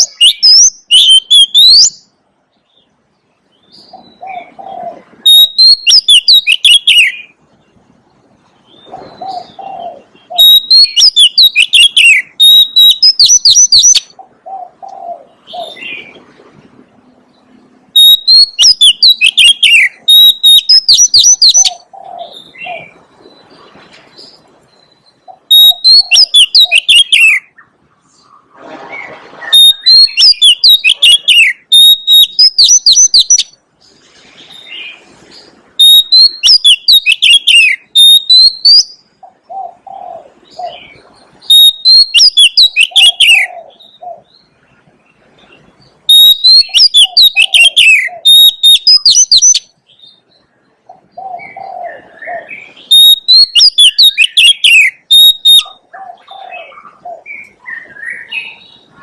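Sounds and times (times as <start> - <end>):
bird singing whistled phrases: 0.0 - 2.1, 5.2 - 7.3, 8.7 - 14.2, 18.0 - 22.8, 24.8 - 27.6, 29.5 - 33.6, 35.8 - 39.1, 41.4 - 44.0, 46.1 - 49.7, 51.2 - 55.8, 56.6 - 58.9.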